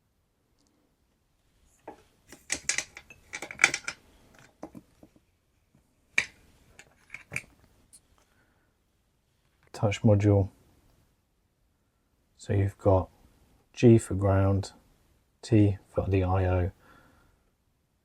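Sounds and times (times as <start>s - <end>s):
tools clinking on a workbench: 1.9s - 4.8s, 6.2s - 7.5s.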